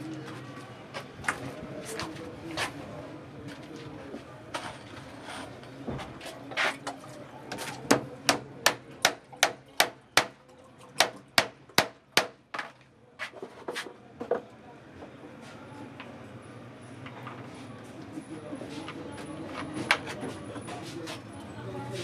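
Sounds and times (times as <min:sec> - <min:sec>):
hammer striking wood: 0:07.9 - 0:10.4, 0:11.0 - 0:12.7.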